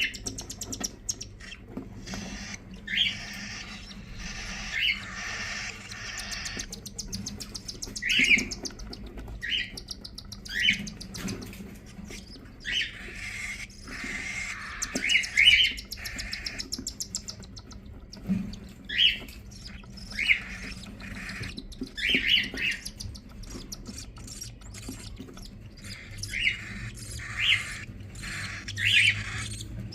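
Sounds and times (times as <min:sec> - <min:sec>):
bird chicks chirping: 0:00.0 - 0:29.9
hissing begging calls: 0:01.3 - 0:06.7, 0:12.3 - 0:17.7, 0:18.9 - 0:23.0, 0:25.8 - 0:29.7.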